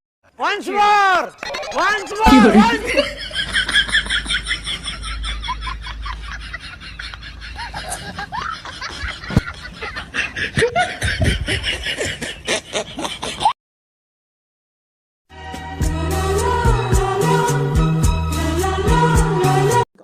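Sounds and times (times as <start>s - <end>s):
people giggling: 1.4s - 13.6s.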